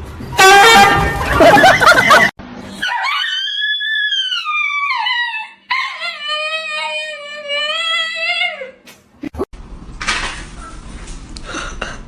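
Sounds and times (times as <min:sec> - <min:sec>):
dog howling: 0:02.8 - 0:08.7.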